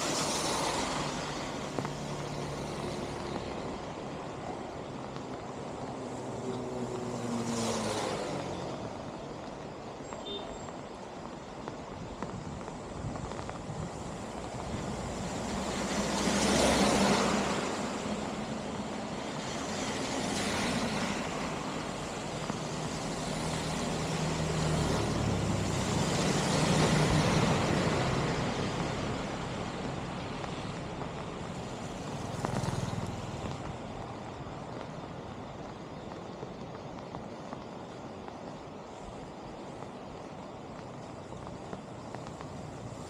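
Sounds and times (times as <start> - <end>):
vehicles passing: 0.0 - 10.1, 10.8 - 43.0.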